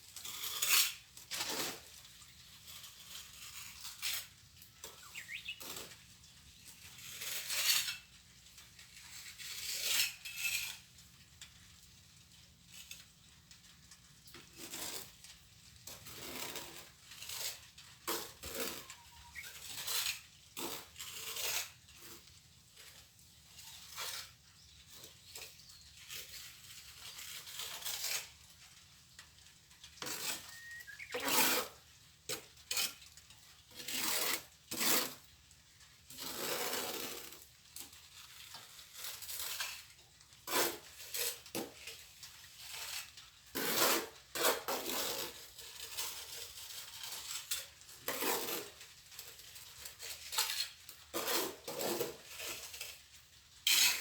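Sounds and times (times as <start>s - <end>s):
trowel scraping mortar: 0.1s - 6.0s, 7.0s - 8.1s, 9.1s - 10.8s, 14.6s - 15.2s, 15.9s - 28.5s, 30.0s - 33.0s, 33.7s - 35.3s, 36.1s - 37.6s, 38.2s - 42.0s, 42.6s - 54.0s.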